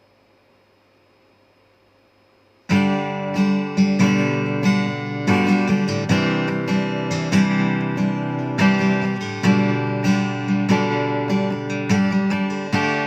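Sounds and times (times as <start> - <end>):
acoustic guitar strummed chords: 2.7 - 13.0.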